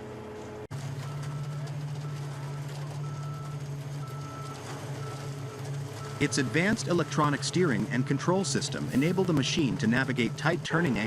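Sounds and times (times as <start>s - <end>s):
heavy machine engine running: 0.0s - 11.0s
backup alarm beeping: 3.0s - 11.0s.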